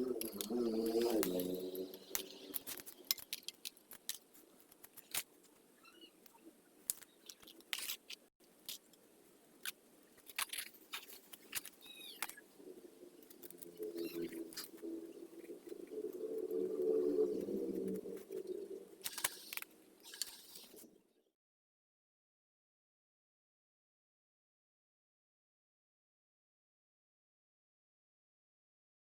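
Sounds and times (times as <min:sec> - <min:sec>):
pigeon cooing: 0:00.0 - 0:03.1, 0:11.8 - 0:19.5
faint bird chirps: 0:05.8 - 0:07.4, 0:11.7 - 0:21.2.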